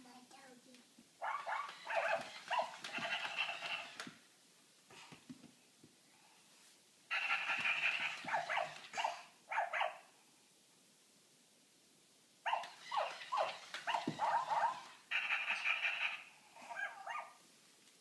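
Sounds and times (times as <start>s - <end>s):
puppy yipping and whining: 1.2s - 3.2s, 8.2s - 10.0s, 12.5s - 14.9s, 16.6s - 17.4s.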